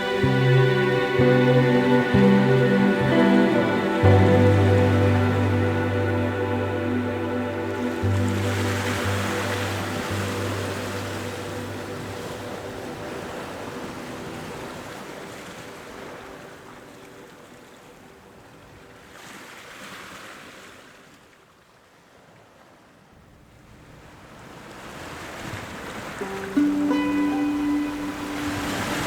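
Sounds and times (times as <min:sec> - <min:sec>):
rushing wave-like noise: 0:00.0 - 0:16.4
soft background music: 0:00.0 - 0:18.5, 0:26.2 - 0:29.0.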